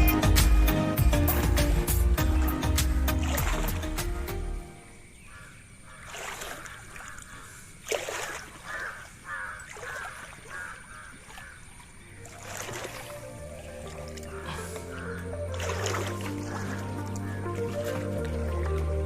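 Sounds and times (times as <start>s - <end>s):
water splashing: 0.5s - 4.6s, 5.9s - 19.0s
crow cawing: 5.2s - 11.7s, 14.3s - 15.4s, 16.4s - 18.0s.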